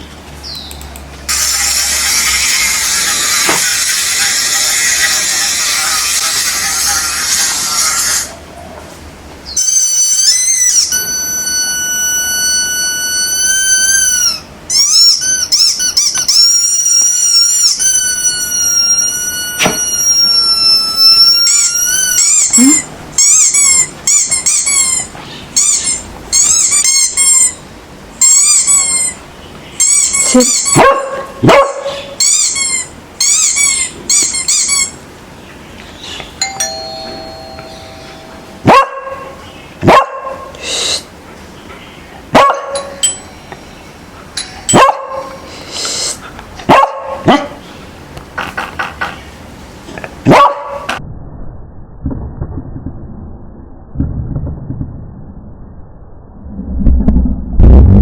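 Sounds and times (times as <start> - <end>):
high squeaky chirps: 9.5 - 31.0, 31.9 - 35.0, 36.4 - 38.6
dog barking: 30.7 - 32.2, 38.6 - 40.6, 42.3 - 43.0, 44.7 - 45.4, 46.6 - 47.6, 50.3 - 51.0
doorbell ding-dong chime: 36.4 - 38.6.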